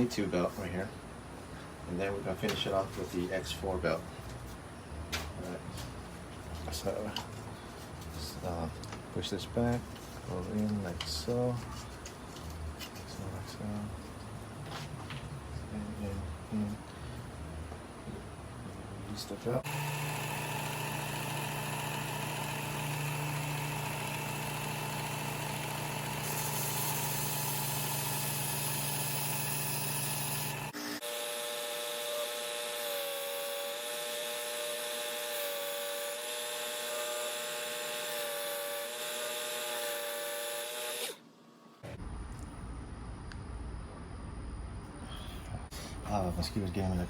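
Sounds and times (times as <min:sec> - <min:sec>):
belt sharpener motor running: 0:19.6 - 0:41.2.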